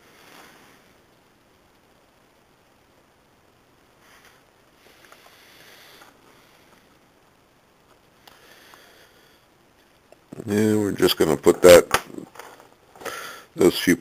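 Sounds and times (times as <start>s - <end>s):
soft rustling: 0.0s - 1.0s, 3.9s - 7.0s.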